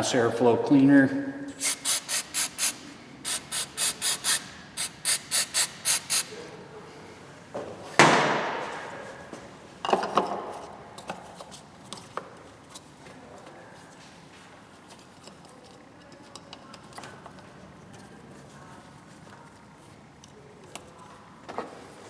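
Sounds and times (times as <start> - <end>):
aerosol can spraying bursts: 1.5 - 6.5.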